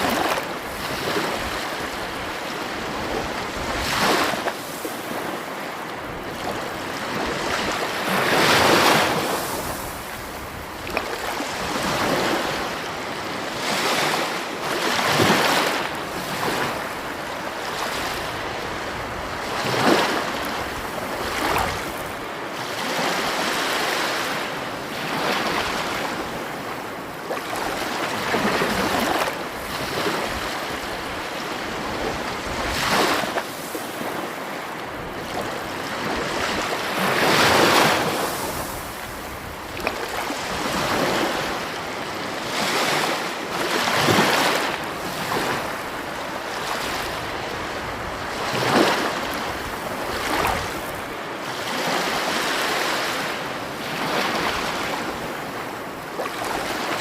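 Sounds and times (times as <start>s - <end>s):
sea waves breaking: 0.0s - 57.0s.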